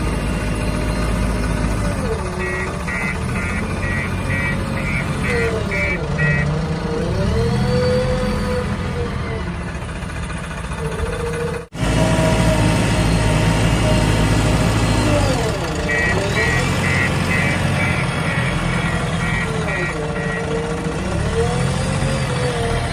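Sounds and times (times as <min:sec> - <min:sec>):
diesel engine running: 0:00.0 - 0:22.9
reversing alarm beeping: 0:15.9 - 0:20.5.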